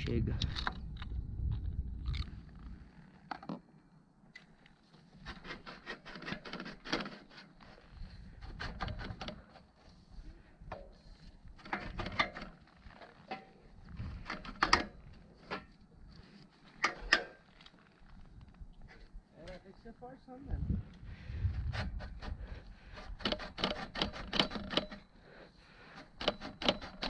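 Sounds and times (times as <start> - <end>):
scraping and clicking by hand: 4.4 - 10.0, 10.7 - 19.6, 21.5 - 25.1, 25.8 - 27.0.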